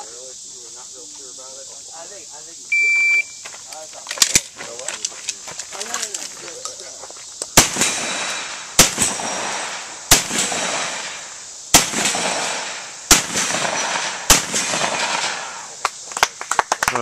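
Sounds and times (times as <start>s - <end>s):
shotgun shots echoing: 7.6s - 15.7s.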